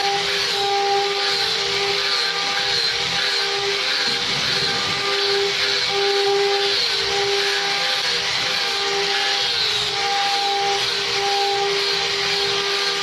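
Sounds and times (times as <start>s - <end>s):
sawmill machinery whining hum: 0.0s - 13.0s.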